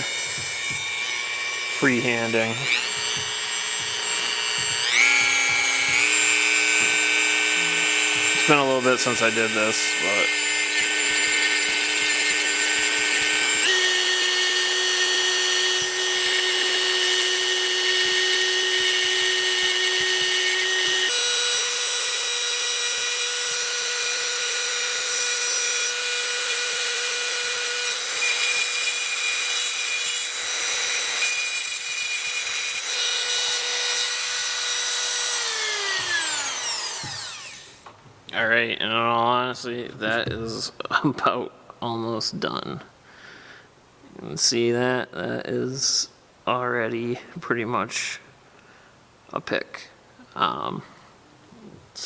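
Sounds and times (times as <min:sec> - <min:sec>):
rotary tool grinding metal: 0:00.0 - 0:37.8.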